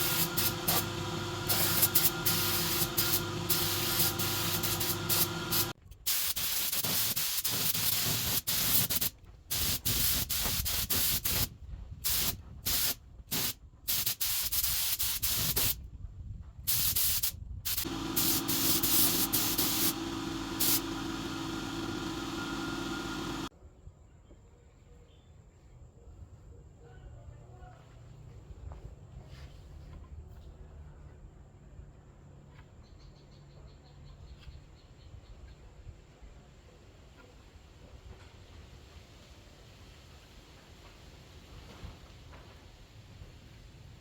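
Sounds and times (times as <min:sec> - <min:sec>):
steady hum: 0:00.0 - 0:05.8, 0:17.8 - 0:23.5
compressed air hissing: 0:00.0 - 0:11.5, 0:16.7 - 0:23.5.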